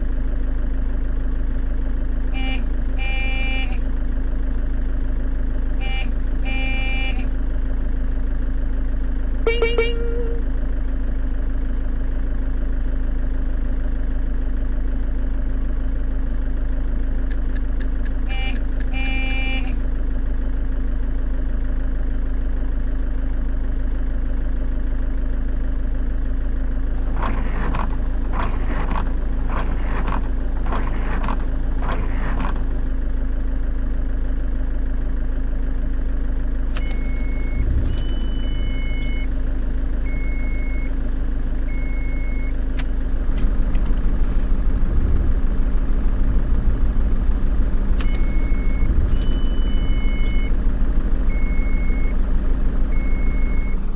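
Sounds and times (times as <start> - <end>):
high reversing beep: 9.5 - 10.5, 36.8 - 39.3, 40.1 - 40.9, 41.7 - 42.6, 48.0 - 50.6, 51.3 - 52.2, 52.9 - 53.8
short toy horn toots: 9.5 - 10.5
toy truck engine hum: 9.5 - 10.5, 27.0 - 32.7.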